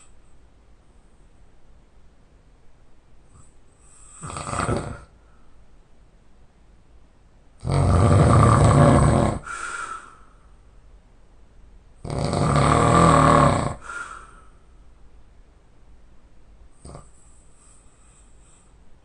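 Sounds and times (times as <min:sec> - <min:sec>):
soft breath out: 0:03.4 - 0:04.2, 0:09.4 - 0:10.6, 0:13.8 - 0:14.8, 0:17.1 - 0:18.9
man snoring loudly: 0:04.2 - 0:05.1, 0:07.6 - 0:09.5, 0:12.0 - 0:13.9, 0:16.8 - 0:17.0.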